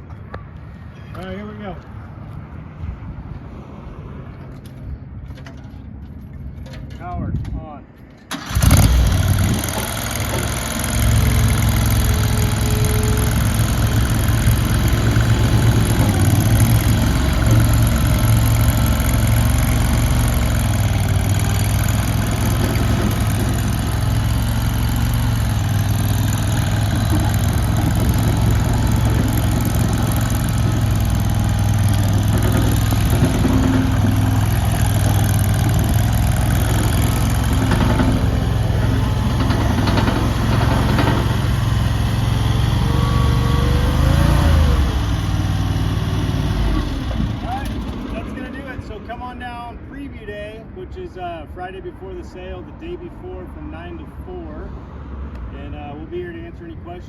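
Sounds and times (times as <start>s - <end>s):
loader engine running: 8.3s - 49.1s.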